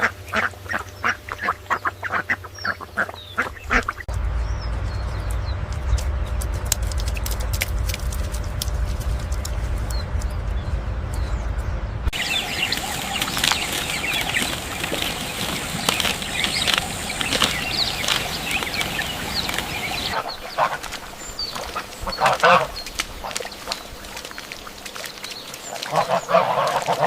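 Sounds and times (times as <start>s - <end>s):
bird calls: 0.0s - 27.0s
bird wings flapping: 5.1s - 11.2s, 12.1s - 27.0s.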